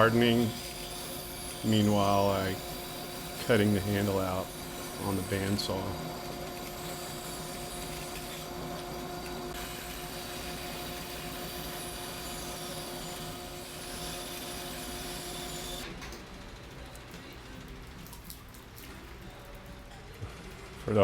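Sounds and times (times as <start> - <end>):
bandsaw motor hum: 0.0 - 16.1.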